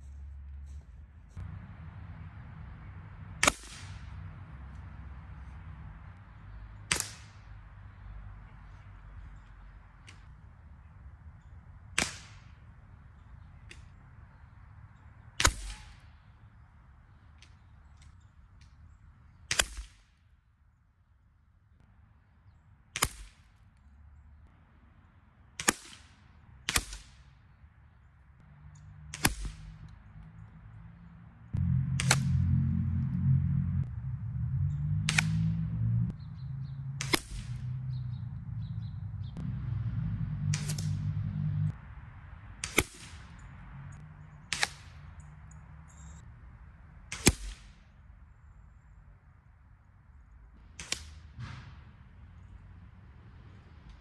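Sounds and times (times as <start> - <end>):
distant air rifle shots: 3.3 - 4.4, 15.4 - 16.3, 29.1 - 29.9, 35.0 - 35.6, 37.0 - 37.9, 42.6 - 43.5, 44.4 - 45.3, 47.1 - 47.8.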